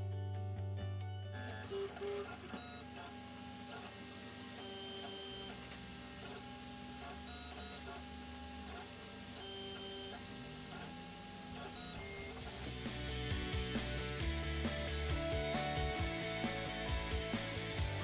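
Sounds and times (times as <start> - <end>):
stepper motors whining: 1.4 - 17.7.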